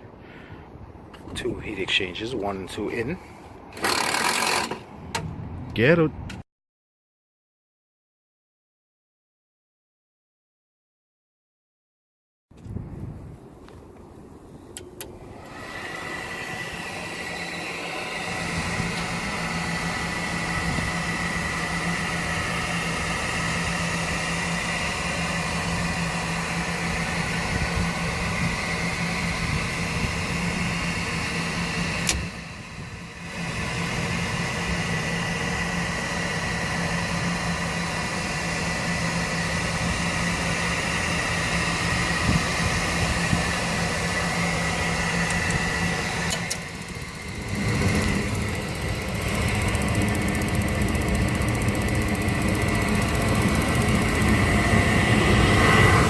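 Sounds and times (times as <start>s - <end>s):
air conditioning unit humming: 13.5s - 56.0s.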